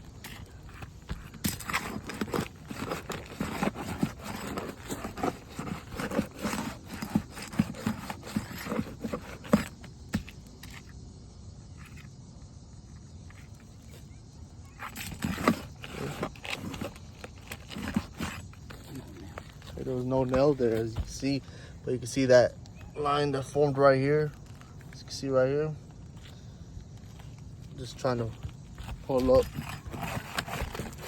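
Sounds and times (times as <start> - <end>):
pry tool scraping shingles: 0.0 - 10.9, 14.7 - 21.4, 27.7 - 31.0.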